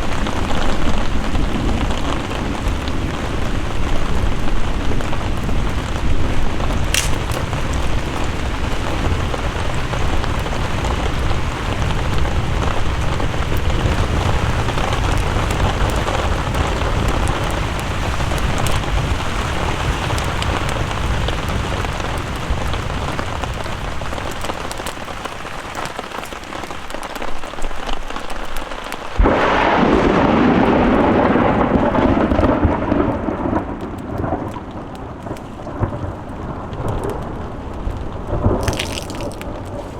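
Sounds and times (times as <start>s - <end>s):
heavy rain: 0.0s - 39.9s
loud thunderclap: 29.2s - 34.7s
rolling thunder: 29.2s - 38.7s.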